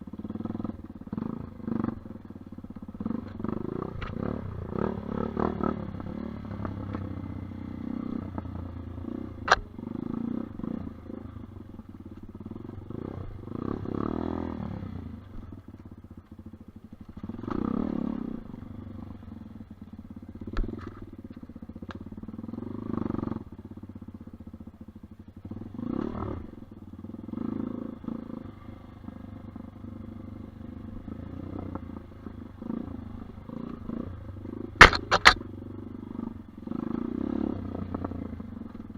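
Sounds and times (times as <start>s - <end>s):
motorcycle engine revving: 0.0s - 38.9s
sharp knocks: 34.8s - 35.4s.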